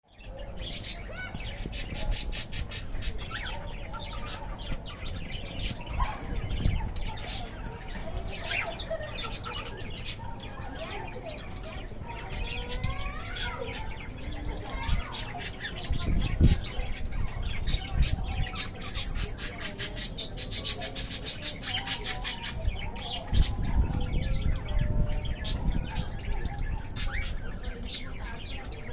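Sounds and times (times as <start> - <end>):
budgerigars chirping: 0.6 - 11.3, 12.5 - 23.7.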